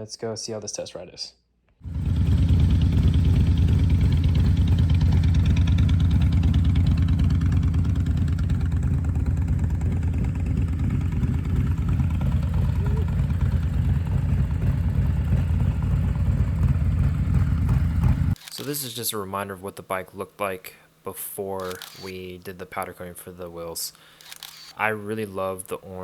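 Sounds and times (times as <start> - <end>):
motorcycle engine running: 1.8 - 18.6.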